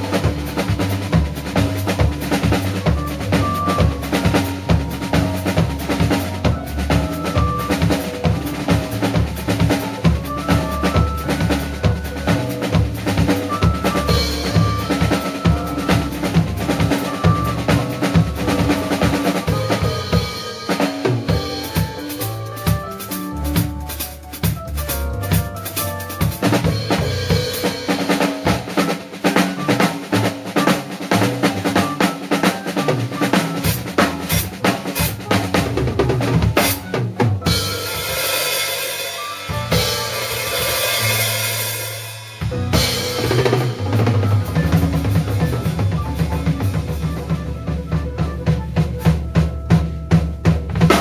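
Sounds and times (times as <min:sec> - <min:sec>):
drum kit playing latin jazz: 0:00.0 - 0:51.0
pitched backing part: 0:00.0 - 0:51.0.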